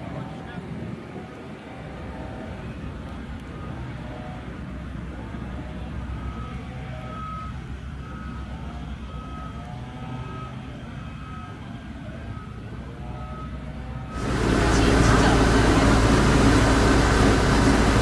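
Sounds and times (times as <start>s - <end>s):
engine low rumble: 0.0s - 18.0s
reversing alarm beeping: 6.2s - 18.0s.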